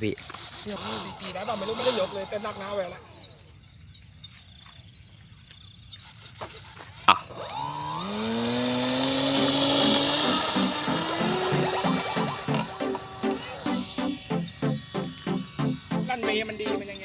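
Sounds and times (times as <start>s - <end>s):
electric fan whine rising: 0.8s - 3.4s, 7.4s - 17.0s.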